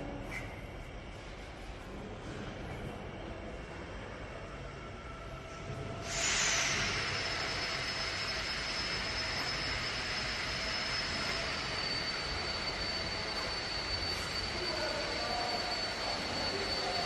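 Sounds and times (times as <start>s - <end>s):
furnace burner roaring: 0.0s - 17.0s
thin high whistle: 6.0s - 17.0s.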